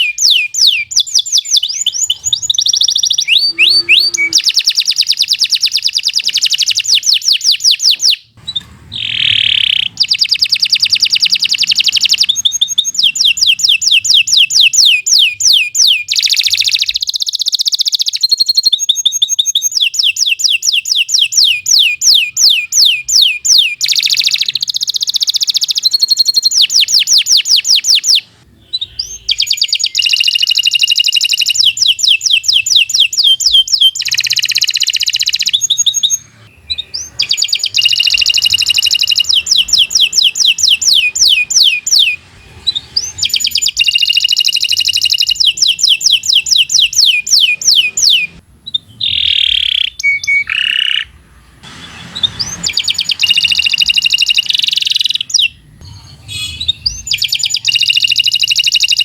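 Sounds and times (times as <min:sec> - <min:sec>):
canary singing rapid trills: 0:00.0 - 0:51.2, 0:51.8 - 0:59.0.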